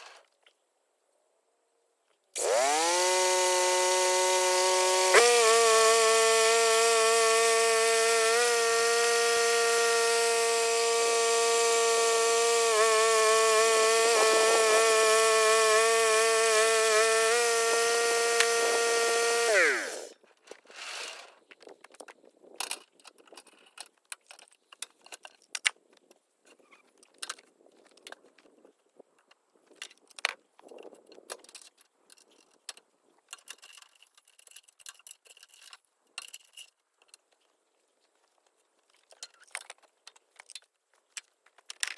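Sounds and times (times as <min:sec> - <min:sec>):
bandsaw mill engine: 0:02.4 - 0:20.2
saw blade cutting log: 0:02.4 - 0:20.2.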